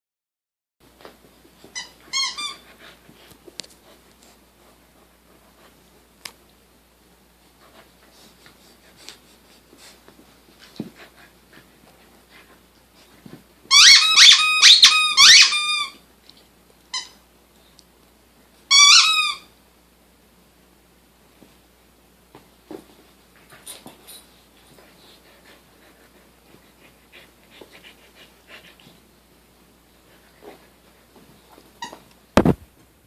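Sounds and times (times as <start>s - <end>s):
squeaky dog toy squeaking: 1.7s - 2.6s, 13.7s - 16.0s, 16.9s - 17.2s, 18.7s - 19.5s
soft clicks and rustles: 3.1s - 4.4s.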